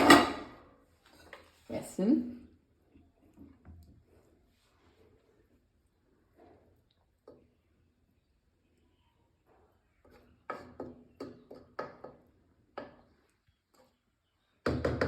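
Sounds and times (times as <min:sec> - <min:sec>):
spoon scraping cooking pot: 0:09.5 - 0:14.4.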